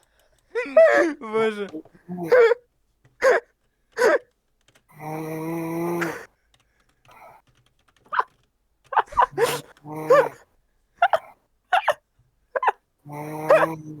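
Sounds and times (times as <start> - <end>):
stifled laughter with snorts: 9.0 - 10.4, 11.0 - 12.0, 12.6 - 12.8, 13.4 - 13.8.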